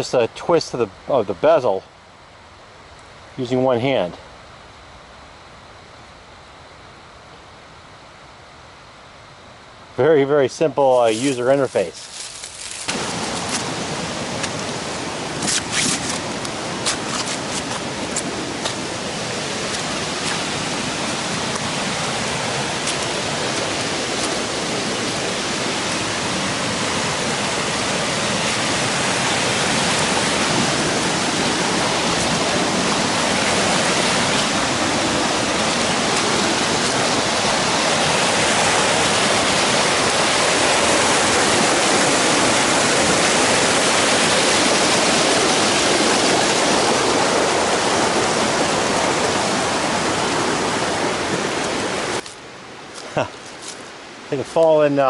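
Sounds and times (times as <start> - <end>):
rushing stream water: 11.0 - 55.0.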